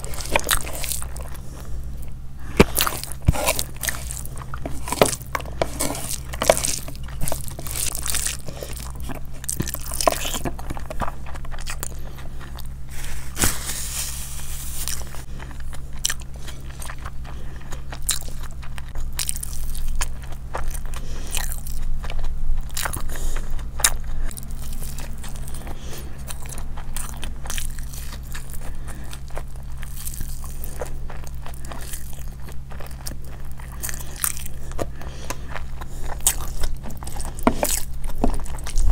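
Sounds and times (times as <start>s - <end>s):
chewing and crunching food: 0.0s - 38.9s
steady low hum: 0.0s - 38.9s.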